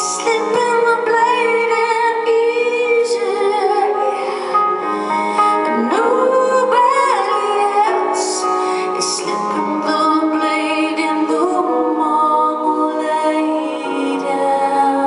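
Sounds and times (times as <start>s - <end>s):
woman singing: 0.0s - 15.0s.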